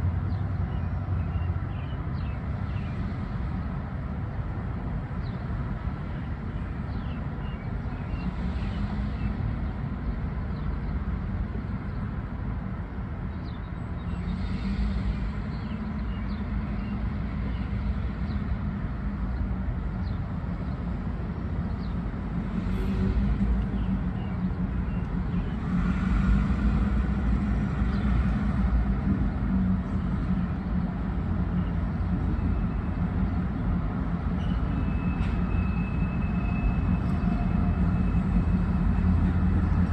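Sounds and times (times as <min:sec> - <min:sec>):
moving vehicle rumble: 0:00.0 - 0:39.9.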